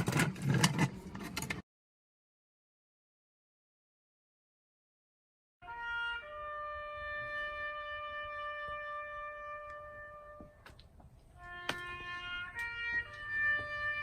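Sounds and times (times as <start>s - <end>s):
music with held wind notes: 5.6s - 14.0s.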